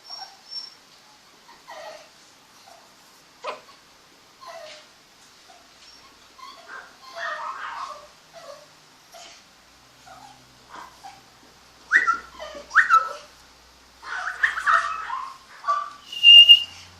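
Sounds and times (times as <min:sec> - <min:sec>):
puppy whimpering and yipping: 0:00.0 - 0:00.8, 0:01.5 - 0:03.7, 0:04.4 - 0:04.9, 0:05.5 - 0:09.4, 0:10.0 - 0:11.2, 0:11.9 - 0:13.3, 0:14.0 - 0:16.8.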